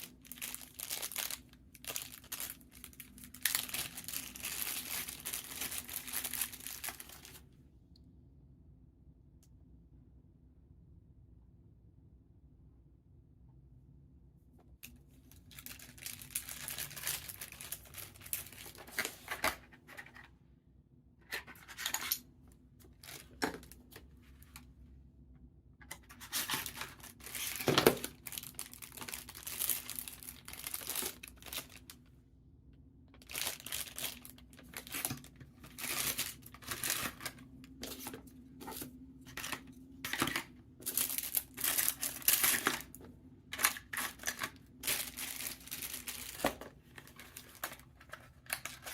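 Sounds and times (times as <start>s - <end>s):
packaging crinkling and tearing: 0.0s - 7.4s, 14.8s - 19.8s, 22.8s - 24.6s, 25.9s - 32.0s, 33.2s - 48.9s.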